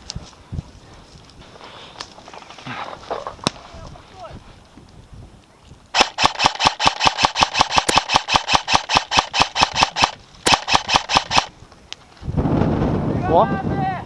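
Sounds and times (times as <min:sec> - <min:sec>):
airsoft gun firing bursts: 0:05.9 - 0:11.5.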